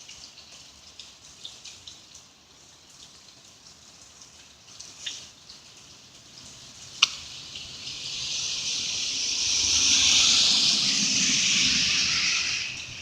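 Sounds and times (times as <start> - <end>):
sharp drip tick: 2.9 - 8.4
vehicle tyres hissing on wet road: 4.5 - 13.0.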